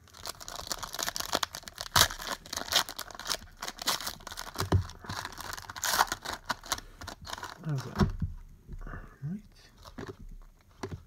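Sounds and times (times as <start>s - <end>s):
foil wrapper crinkling and tearing: 0.0s - 8.0s
cards rustling: 0.2s - 8.2s.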